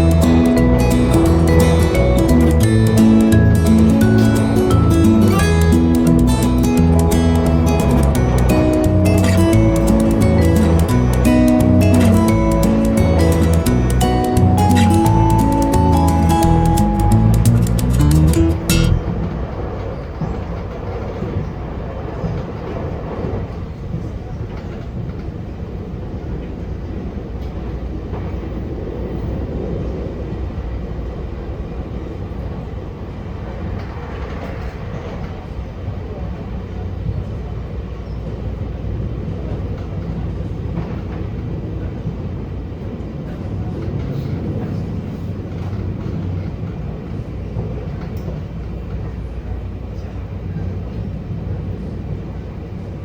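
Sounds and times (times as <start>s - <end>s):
train wheels rumbling on rails: 16.0s - 53.0s.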